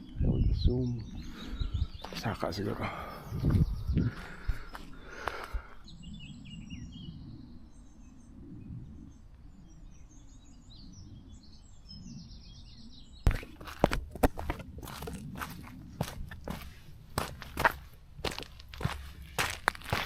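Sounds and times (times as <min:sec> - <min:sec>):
small birds chirping: 0:00.0 - 0:20.0
crunching footsteps on trail: 0:02.0 - 0:05.8, 0:13.3 - 0:20.0.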